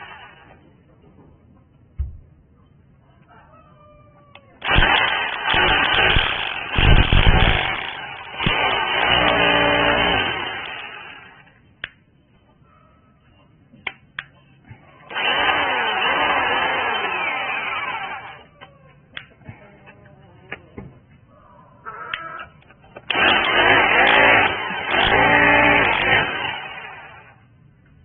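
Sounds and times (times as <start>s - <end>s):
electric hammer drill running: 4.6s - 11.5s, 15.1s - 18.4s, 23.1s - 27.4s
clicks: 18.6s - 20.6s.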